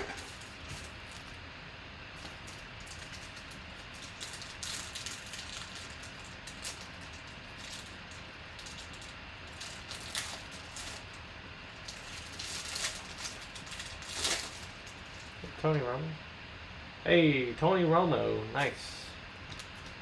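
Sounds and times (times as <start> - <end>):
card packaging crinkling: 0.0 - 1.4, 2.2 - 15.5.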